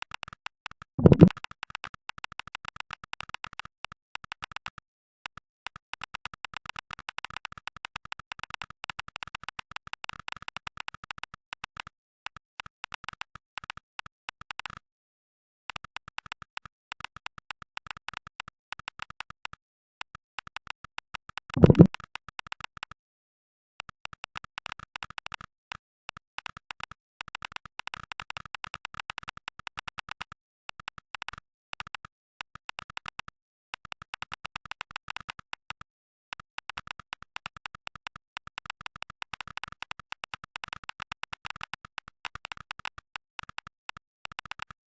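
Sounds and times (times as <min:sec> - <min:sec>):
mechanical keyboard typing clicks: 0:01.0 - 0:01.3, 0:21.6 - 0:21.9.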